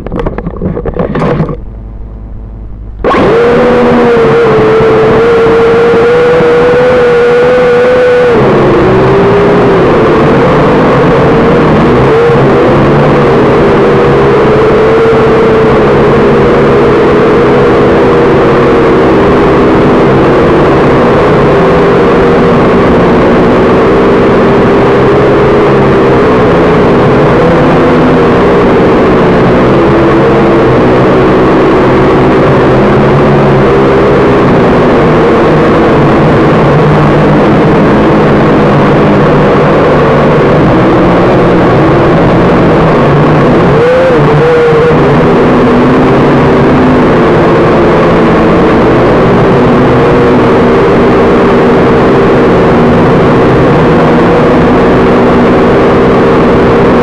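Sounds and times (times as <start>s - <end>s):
quadcopter propellers whining: 3.0s - 39.4s.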